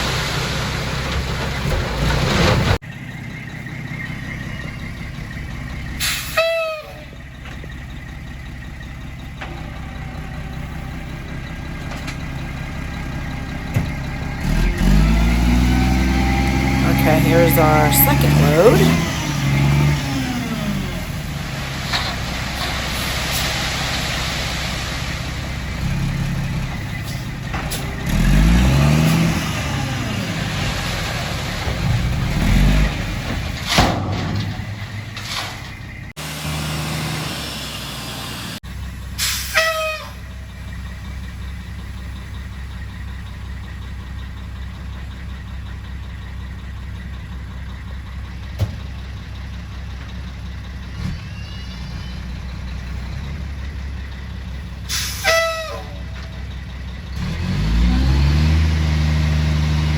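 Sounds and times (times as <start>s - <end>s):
diesel engine running and revving: 0.0s - 59.9s
short falling squeal: 51.1s - 52.5s.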